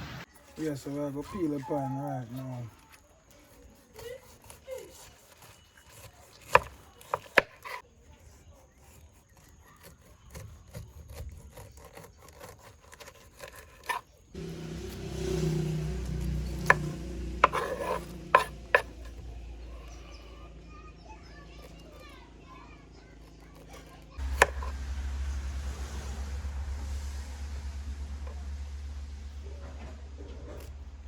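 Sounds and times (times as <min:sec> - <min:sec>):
knife rasping through rind: 0:00.3 - 0:20.2, 0:23.0 - 0:24.8
steady low hum: 0:24.2 - 0:31.0.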